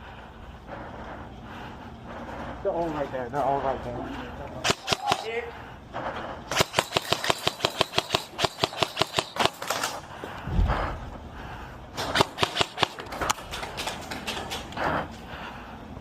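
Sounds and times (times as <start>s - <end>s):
airsoft gun firing bursts: 4.6s - 5.4s, 6.5s - 10.0s, 12.0s - 14.4s.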